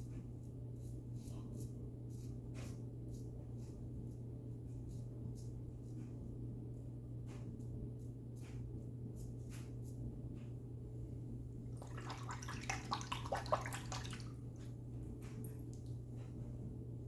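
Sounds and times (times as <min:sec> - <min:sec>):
steady low hum: 0:00.0 - 0:17.0
water running: 0:11.7 - 0:16.0.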